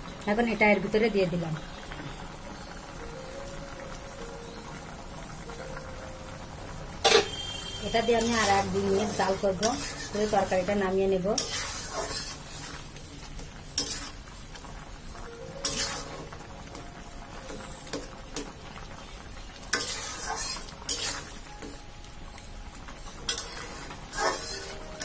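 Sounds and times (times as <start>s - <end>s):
curry sizzling in a pan: 0.0s - 25.0s
utensil scraping against pan: 8.2s - 12.9s, 13.8s - 14.2s, 15.6s - 16.3s, 19.7s - 21.4s, 23.3s - 25.0s.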